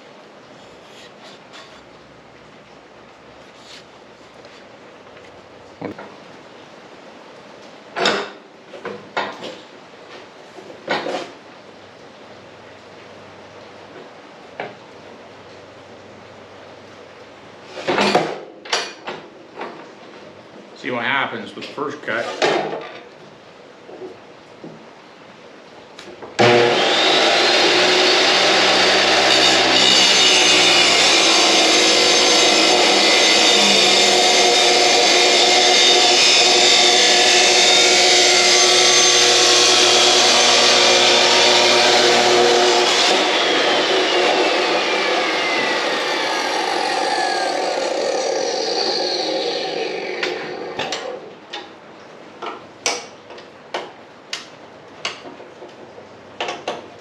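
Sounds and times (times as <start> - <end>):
saw winding down: 26.4 - 51.2
power saw cutting metal: 26.4 - 51.3.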